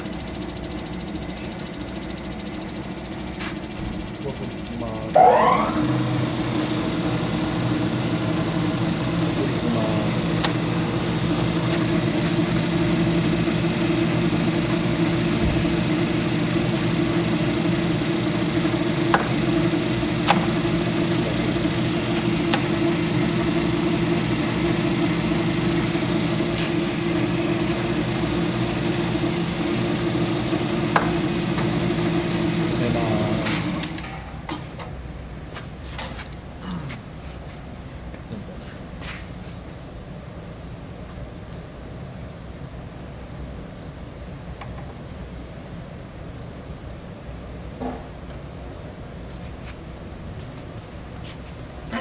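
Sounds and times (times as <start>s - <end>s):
lathe motor humming: 0.0s - 34.6s.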